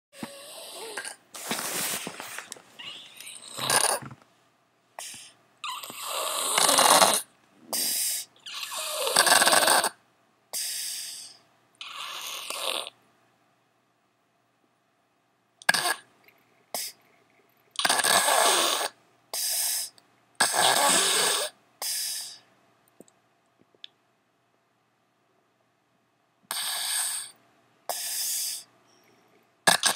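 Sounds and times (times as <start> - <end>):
loud rasping snores: 0.2 - 1.2, 3.3 - 4.2, 5.0 - 10.0, 11.2 - 13.0, 17.8 - 21.6.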